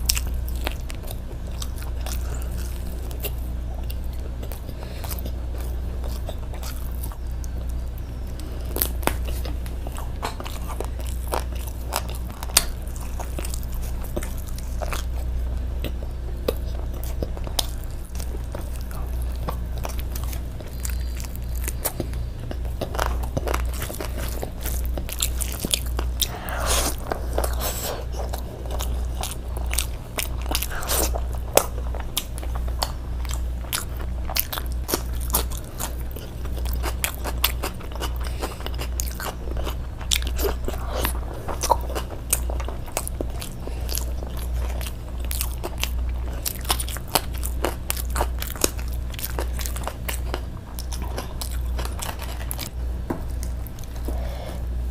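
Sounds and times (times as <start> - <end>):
crunchy bites: 0.0 - 54.7
steady low hum: 0.0 - 54.9
wet chewing: 0.0 - 54.9.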